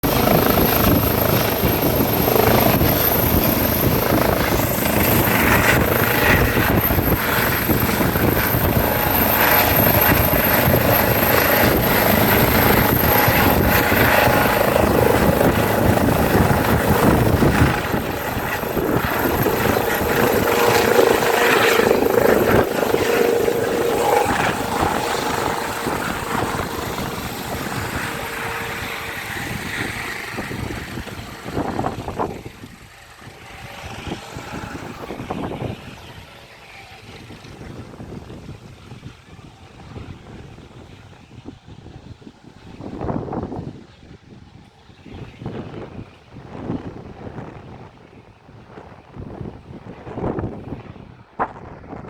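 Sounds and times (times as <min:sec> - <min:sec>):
helicopter rotor blades chopping: 0:00.0 - 0:39.2
helicopter engine whine: 0:00.0 - 0:52.0.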